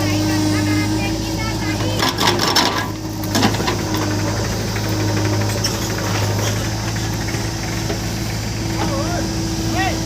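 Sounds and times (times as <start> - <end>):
diesel engine running: 0.0 - 10.0.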